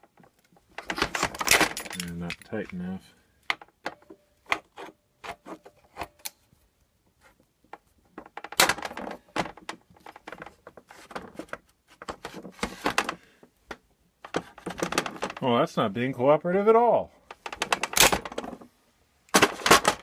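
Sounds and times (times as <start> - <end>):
metal tools clinking and scraping: 0.8 - 2.8.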